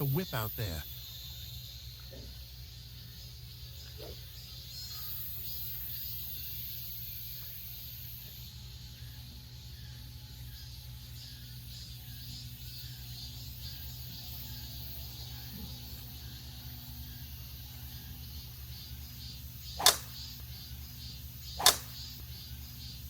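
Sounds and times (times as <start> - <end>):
faint high chirps: 0.0 - 23.0
low background hum: 0.0 - 23.0.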